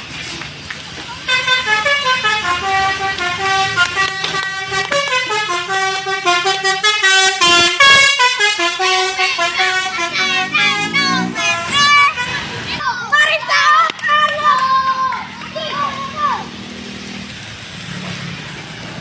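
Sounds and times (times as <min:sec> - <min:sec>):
bus horn playing a melody: 0:01.3 - 0:12.7.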